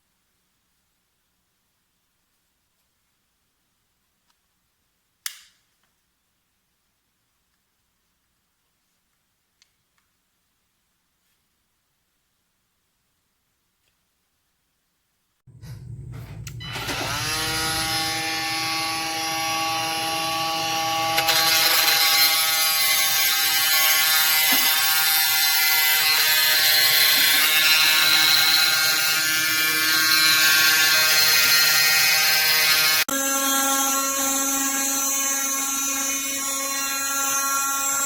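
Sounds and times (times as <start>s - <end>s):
oscillating multi-tool motor whine: 16.6s - 38.0s
blade cutting through nails: 20.8s - 33.0s.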